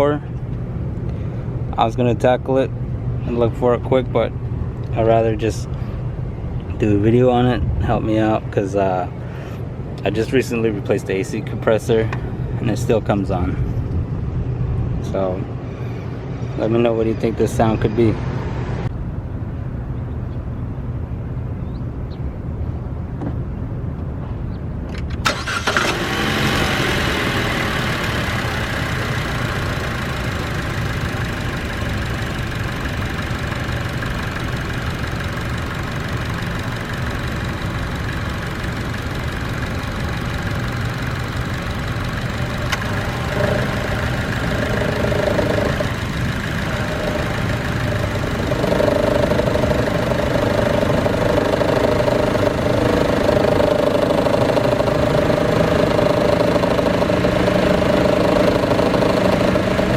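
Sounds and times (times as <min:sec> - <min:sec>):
car engine idling with growl: 0:25.3 - 0:59.9
mid-pitched drone: 0:26.6 - 0:59.9.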